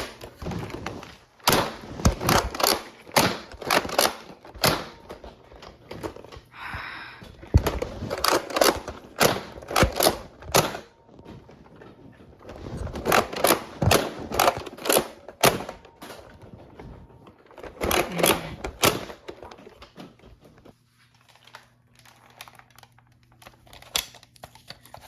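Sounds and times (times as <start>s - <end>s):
faint steady hum: 0.0s - 25.0s.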